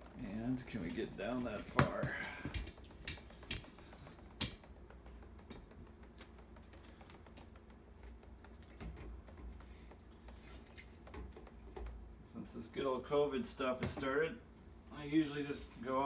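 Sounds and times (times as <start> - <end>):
steady low hum: 0.0 - 16.0
clicks and taps of handling: 0.8 - 12.1.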